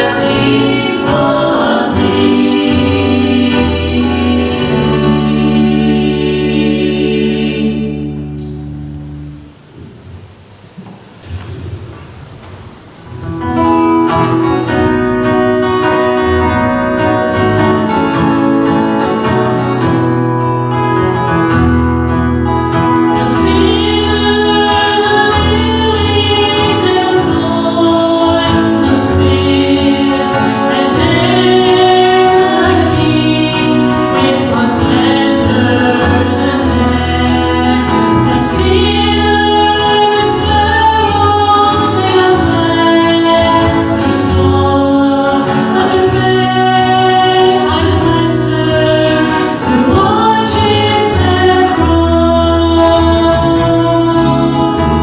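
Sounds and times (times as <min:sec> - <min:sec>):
group singing a hymn: 0:00.0 - 0:09.4, 0:14.0 - 0:55.0
strummed acoustic guitar: 0:00.0 - 0:10.2, 0:13.0 - 0:55.0.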